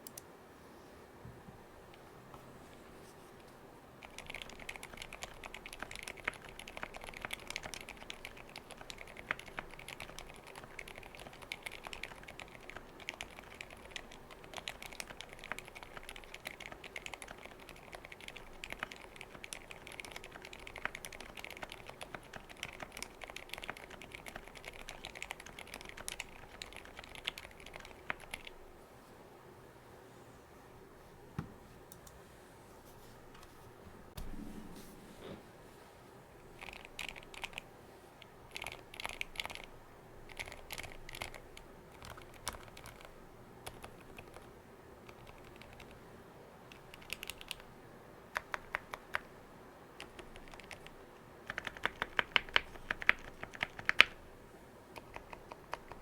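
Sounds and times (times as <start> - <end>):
typing on mechanical keyboard: 4.0 - 28.5, 36.6 - 37.6, 38.5 - 39.7, 40.3 - 46.0, 46.7 - 47.7, 48.3 - 49.3, 50.0 - 54.2, 55.0 - 56.0.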